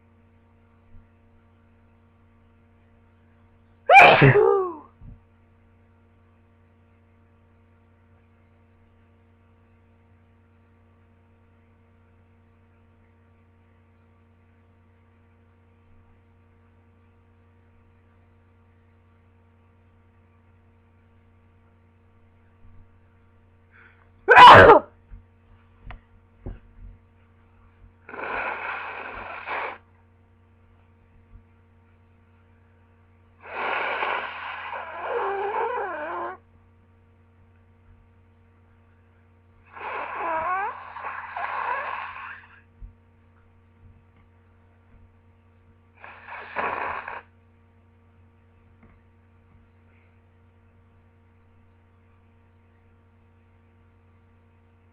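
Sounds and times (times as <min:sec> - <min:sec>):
faint low mains hum: 0:00.0 - 0:54.9
person sneezing: 0:03.9 - 0:04.9, 0:24.3 - 0:24.9.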